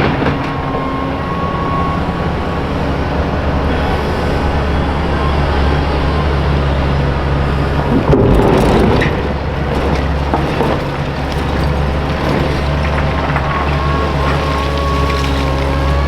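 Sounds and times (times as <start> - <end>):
crushed concrete crashing: 0.0 - 2.0, 7.6 - 16.0
excavator diesel engine running: 0.0 - 16.0.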